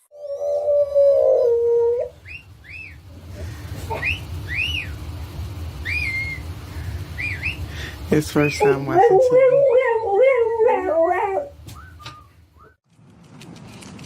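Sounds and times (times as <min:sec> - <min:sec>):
dog howling: 0:00.1 - 0:02.2, 0:08.6 - 0:11.6
dog whining: 0:00.1 - 0:02.5, 0:03.8 - 0:04.9, 0:08.6 - 0:11.6.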